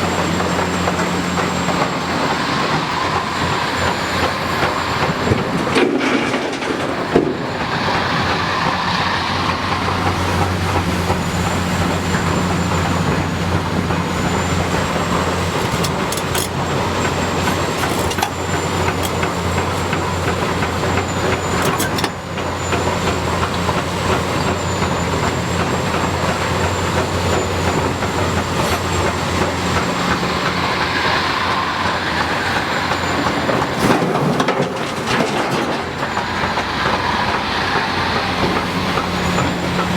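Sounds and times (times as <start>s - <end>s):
excavator diesel engine running: 0.0s - 39.9s
metal knocks and clanks: 15.0s - 22.2s.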